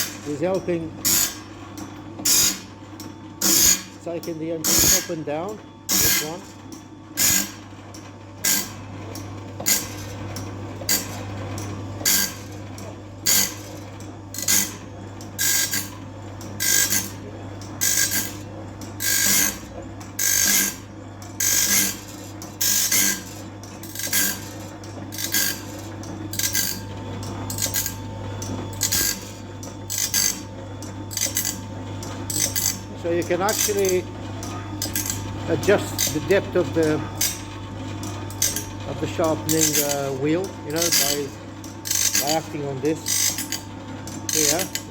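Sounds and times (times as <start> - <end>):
grinding wheel on saw teeth: 0.0 - 1.4, 2.2 - 2.7, 3.4 - 3.9, 4.6 - 6.4, 7.2 - 7.6, 8.4 - 8.8, 9.6 - 10.2, 12.0 - 12.6, 13.2 - 14.8, 15.4 - 15.9, 16.6 - 18.4, 19.0 - 20.8, 21.4 - 26.9, 27.5 - 28.1, 28.7 - 37.5, 38.3 - 44.9
motor hum: 0.0 - 44.9.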